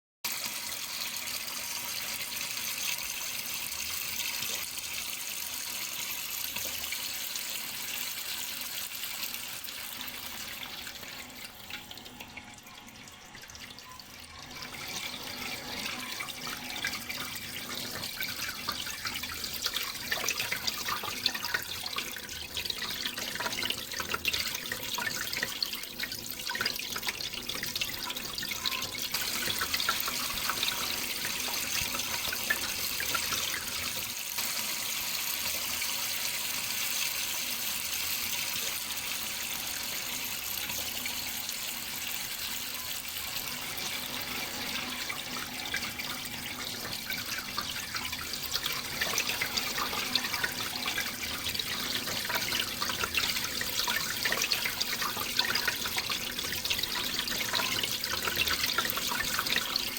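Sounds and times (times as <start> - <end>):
water splashing and trickling: 40.2 - 59.9.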